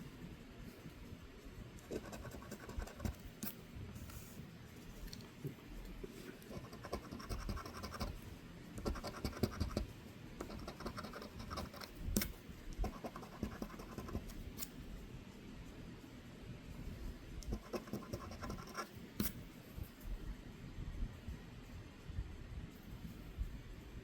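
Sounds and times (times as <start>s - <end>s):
scratching lottery ticket: 1.9s - 3.3s, 6.5s - 8.2s, 8.8s - 11.9s, 12.8s - 14.4s.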